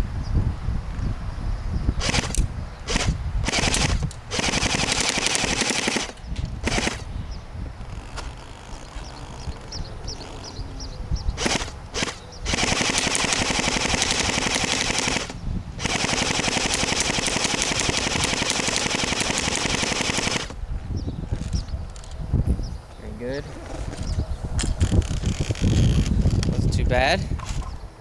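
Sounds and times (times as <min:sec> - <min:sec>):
airsoft gun firing bursts: 0:02.0 - 0:07.2, 0:11.4 - 0:20.6.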